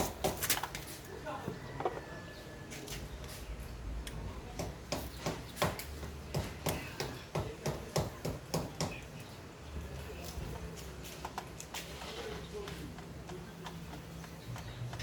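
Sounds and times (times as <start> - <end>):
sharp taps on bike parts: 4.0 - 9.2.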